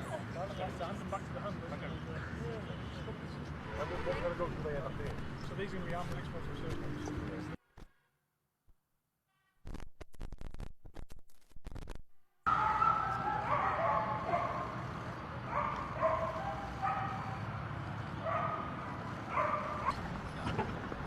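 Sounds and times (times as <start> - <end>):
steady background noise: 12.5 - 21.0.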